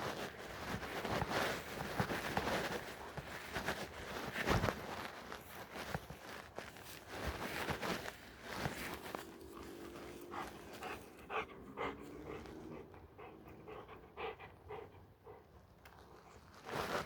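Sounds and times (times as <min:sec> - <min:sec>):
rhythmic panting breaths: 0:10.0 - 0:15.6.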